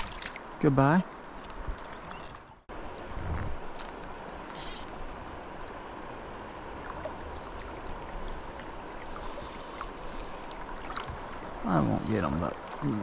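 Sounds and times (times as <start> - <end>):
river water flowing: 0.0 - 13.0.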